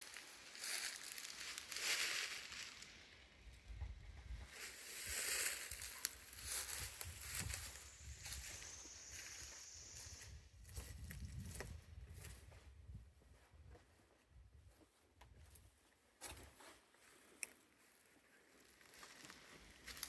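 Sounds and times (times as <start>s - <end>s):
footsteps crunching dry leaves: 0.0s - 3.2s, 4.4s - 12.6s, 17.1s - 20.0s.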